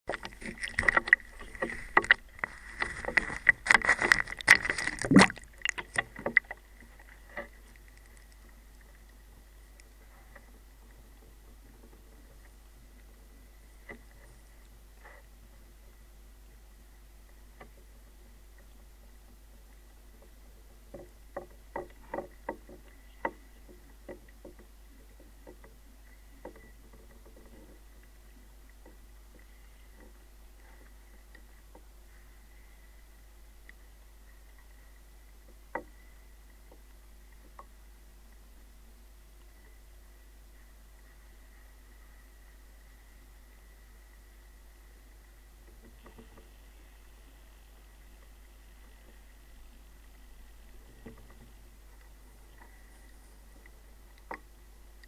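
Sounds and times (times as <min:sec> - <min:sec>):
clicks and knocks underwater: 0:00.1 - 0:13.2, 0:13.8 - 0:15.6, 0:17.3 - 0:32.7, 0:45.2 - 0:55.0
water sloshing and splashing: 0:00.1 - 0:15.6, 0:40.5 - 0:55.0.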